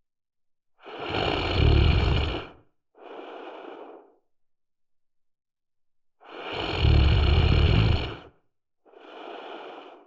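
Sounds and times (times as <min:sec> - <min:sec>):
person snoring: 0:00.8 - 0:04.1, 0:06.2 - 0:10.0.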